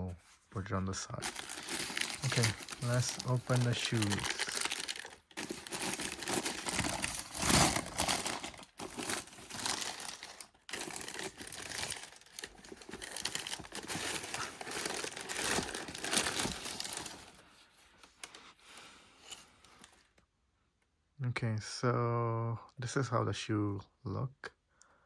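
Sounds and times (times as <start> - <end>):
packing material crinkling: 1.2 - 18.4.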